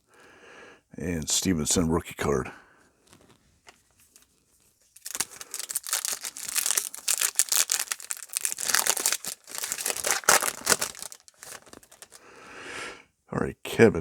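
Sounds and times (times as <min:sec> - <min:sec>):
plastic wrapper crinkling and tearing: 0:03.0 - 0:03.5, 0:04.9 - 0:12.2.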